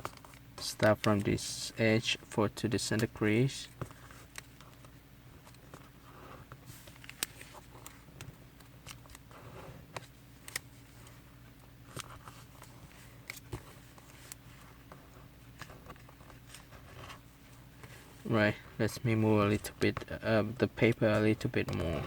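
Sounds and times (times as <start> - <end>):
faint hum: 0.0 - 22.0
paper rustling and creasing: 3.7 - 11.2, 11.8 - 18.3.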